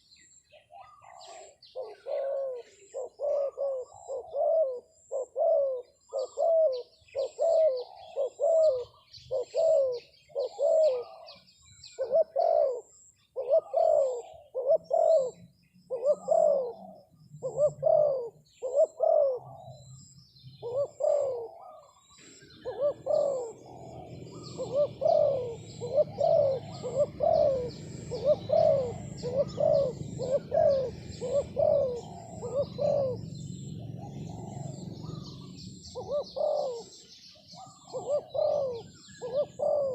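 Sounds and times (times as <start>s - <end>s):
dove cooing: 0.0s - 39.9s
small birds chirping: 0.0s - 39.9s
steady low hum: 22.4s - 37.1s.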